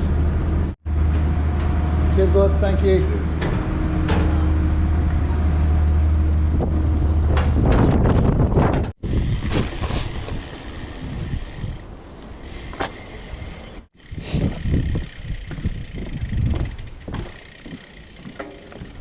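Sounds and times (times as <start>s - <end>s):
ferry engine humming: 0.0s - 7.7s
wind rushing over microphone: 6.3s - 12.1s, 14.0s - 17.3s.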